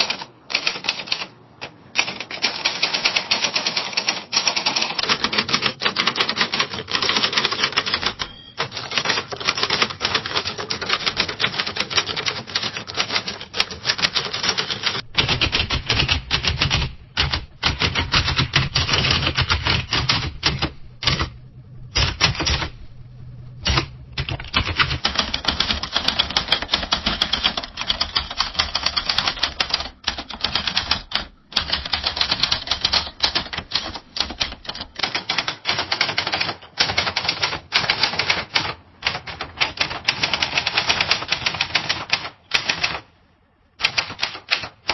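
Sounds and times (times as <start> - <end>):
low steady hum: 14.9 - 26.3
typewriter keystroke clicks: 22.0 - 22.7, 23.6 - 43.0, 43.8 - 44.9.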